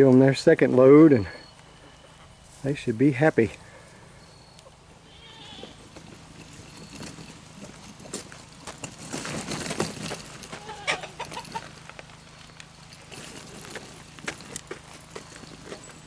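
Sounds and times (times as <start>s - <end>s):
chickens clucking: 10.6s - 11.8s.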